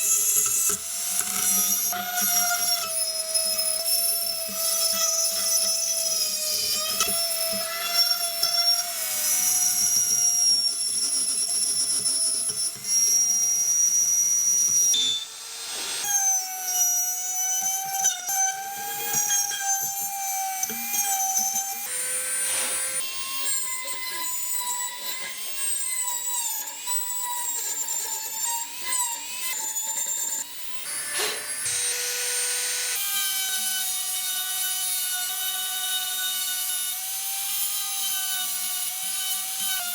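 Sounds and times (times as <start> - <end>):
power tool motor whine: 0.0 - 39.9.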